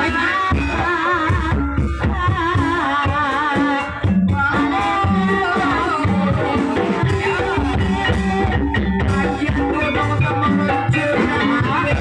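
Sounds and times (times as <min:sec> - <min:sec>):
person singing wavering melody: 0:00.0 - 0:12.0
drum strokes: 0:00.4 - 0:12.0.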